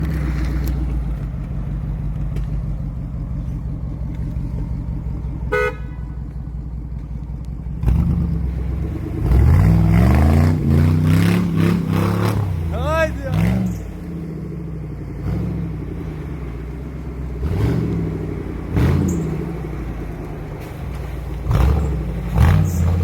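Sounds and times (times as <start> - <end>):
car horn toot: 5.5 - 6.2
engine revving: 7.6 - 23.0.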